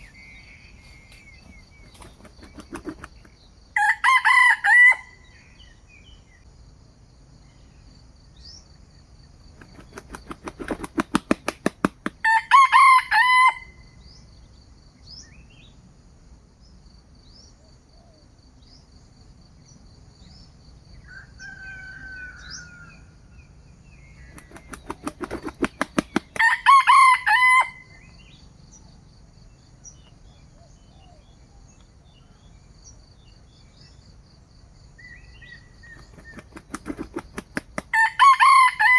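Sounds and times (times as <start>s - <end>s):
insects ticking: 0.0s - 3.4s, 9.4s - 12.2s, 36.0s - 38.0s
rooster wings flapping: 0.9s - 3.4s, 9.6s - 12.5s, 24.3s - 27.3s, 36.0s - 38.8s
rooster crowing: 3.8s - 5.3s, 12.2s - 13.8s, 21.0s - 23.2s, 26.3s - 28.0s, 36.7s - 38.9s.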